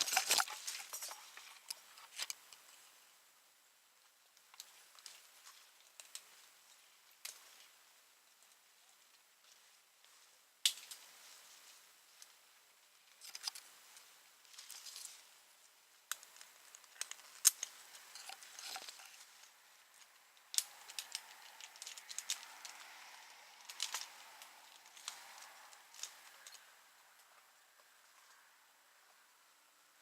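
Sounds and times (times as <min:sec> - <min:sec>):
climbing gear metallic clinks: 0:00.0 - 0:02.4, 0:16.9 - 0:19.5, 0:20.6 - 0:23.0.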